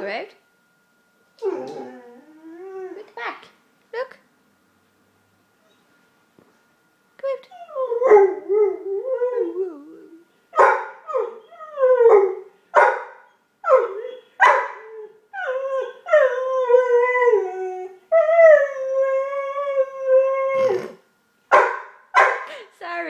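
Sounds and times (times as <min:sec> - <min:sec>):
dog howling: 0:01.4 - 0:03.1, 0:07.5 - 0:21.0
dog whining: 0:01.4 - 0:03.2, 0:07.5 - 0:12.4, 0:13.3 - 0:21.0.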